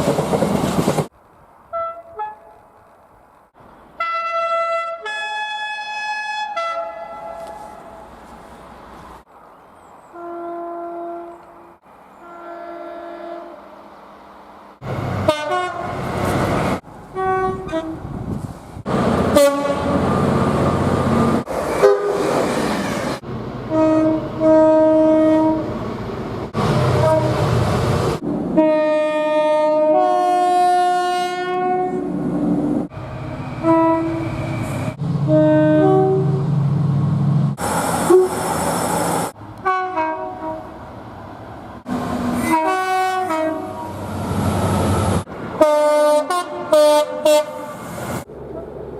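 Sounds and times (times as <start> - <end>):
low rumble of trains: 0.0 - 48.9
train horns blasting: 1.7 - 2.6, 4.0 - 8.1, 10.1 - 13.8, 15.2 - 16.1, 17.1 - 18.1, 19.3 - 20.1, 21.8 - 22.3, 23.7 - 25.7, 26.9 - 27.5, 28.5 - 32.2, 33.5 - 36.5, 38.1 - 38.4, 39.6 - 40.8, 42.3 - 44.1, 45.6 - 47.9.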